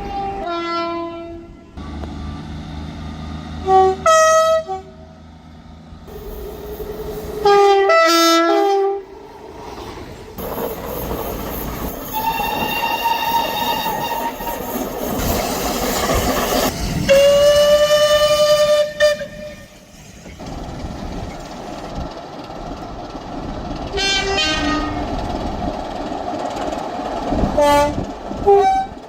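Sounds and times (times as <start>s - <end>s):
two-note train horn: 0.0s - 1.8s, 3.6s - 5.0s, 7.4s - 9.0s, 17.1s - 19.7s, 24.0s - 25.1s, 27.6s - 29.0s
long steady train horn: 0.0s - 2.1s, 3.6s - 5.2s, 7.4s - 9.1s, 12.1s - 14.6s, 17.1s - 19.8s, 23.9s - 25.2s, 27.5s - 29.0s
train wheel and rail noise: 0.0s - 29.0s.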